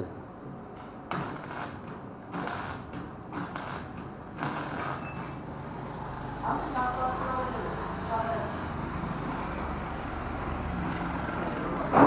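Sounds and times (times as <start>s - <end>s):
hand tool rasping on metal: 2.4s - 5.2s.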